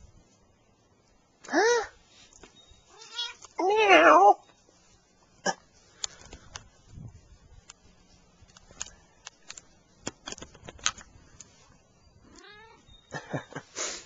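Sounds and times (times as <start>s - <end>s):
cat meowing: 2.9s - 4.4s, 12.3s - 12.9s.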